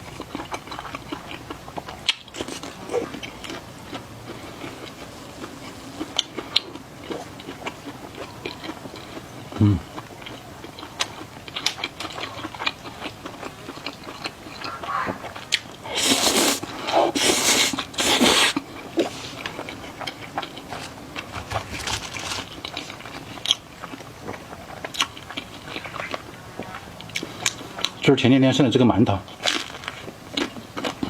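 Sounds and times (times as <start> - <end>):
wet chewing with smacks: 0.0 - 28.1.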